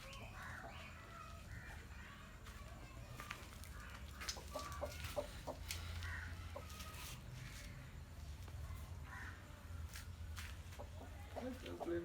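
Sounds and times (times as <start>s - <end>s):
chicken clucking: 4.0s - 7.0s.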